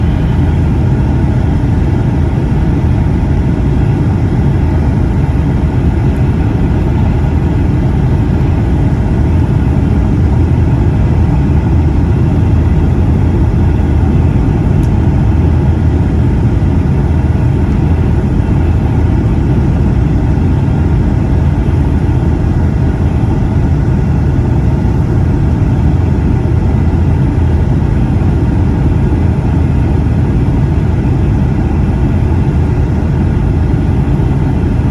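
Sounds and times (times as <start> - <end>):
airliner cabin engine roar: 0.0 - 34.9.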